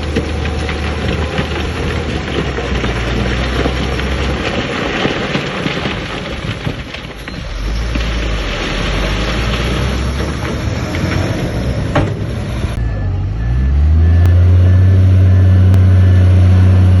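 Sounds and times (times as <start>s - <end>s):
rock and gravel tumbling: 0.0s - 12.5s
heavy diesel engine drone: 8.3s - 17.0s.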